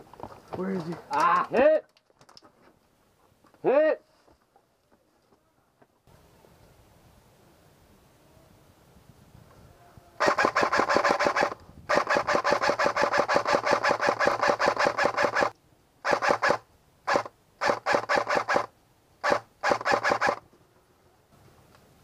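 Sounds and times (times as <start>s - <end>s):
airsoft gun firing bursts: 10.2s - 20.4s.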